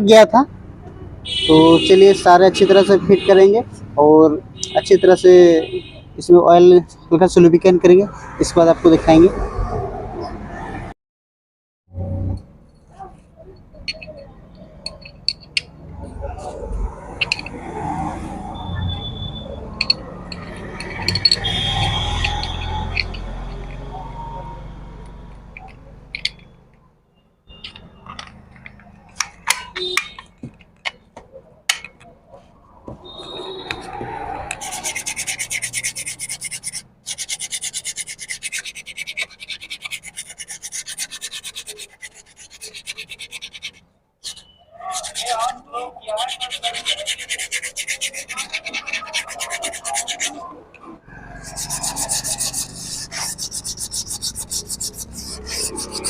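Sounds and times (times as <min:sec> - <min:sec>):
metal brake parts clicking: 0:13.8 - 0:15.8, 0:17.2 - 0:17.6, 0:19.8 - 0:21.6, 0:22.2 - 0:23.8, 0:25.3 - 0:26.7, 0:27.5 - 0:31.1, 0:31.7 - 0:32.1
rasping rubbing strokes on metal: 0:19.8 - 0:23.9, 0:34.4 - 0:50.4, 0:51.1 - 0:56.0.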